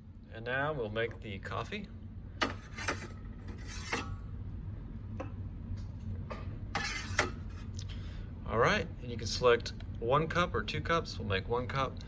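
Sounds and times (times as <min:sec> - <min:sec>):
steady low hum: 0:00.0 - 0:12.0
rubbing and scraping sounds: 0:02.6 - 0:04.1, 0:06.8 - 0:07.7.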